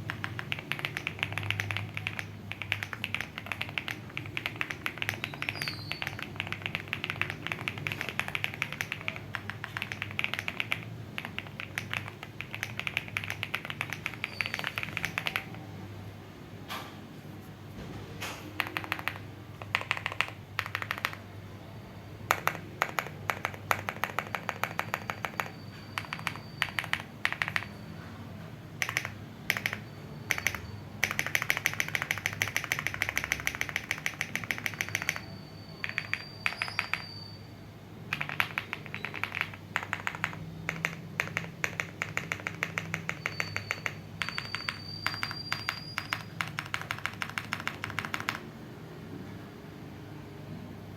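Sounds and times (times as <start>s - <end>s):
mechanical keyboard keystrokes: 0.0s - 15.7s, 18.2s - 21.4s, 22.2s - 27.8s, 28.8s - 37.1s, 38.1s - 48.6s.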